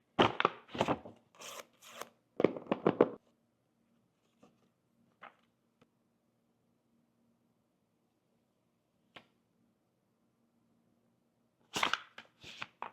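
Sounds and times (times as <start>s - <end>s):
paper rustling and tearing: 0.7s - 2.1s.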